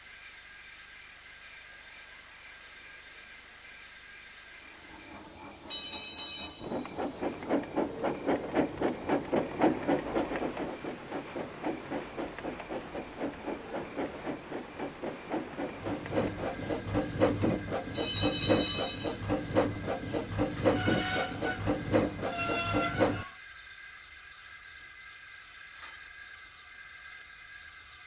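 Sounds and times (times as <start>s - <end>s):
steam locomotive chuffing: 4.5s - 23.4s.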